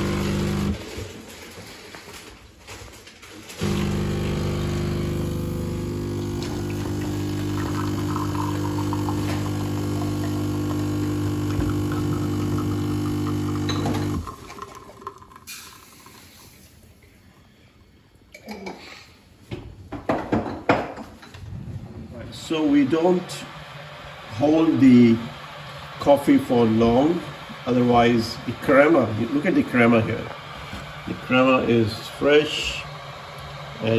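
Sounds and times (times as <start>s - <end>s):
espresso machine pump humming: 0.0s - 0.9s, 3.6s - 16.2s, 22.3s - 33.9s.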